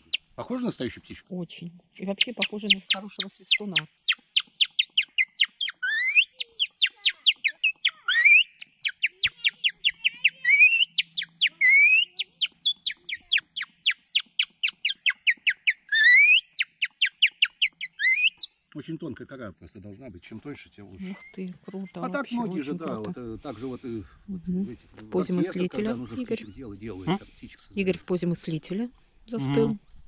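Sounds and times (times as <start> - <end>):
bark whistle birdsong imitation: 2.2 - 18.6.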